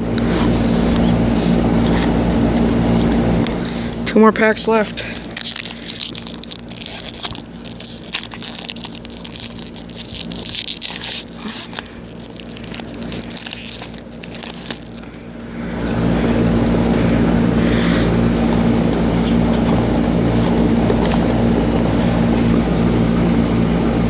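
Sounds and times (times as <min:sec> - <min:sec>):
engine drone: 0:00.0 - 0:24.0
wrapper crinkling and tearing: 0:04.6 - 0:15.5
cards rustling: 0:04.6 - 0:17.2, 0:18.8 - 0:22.9.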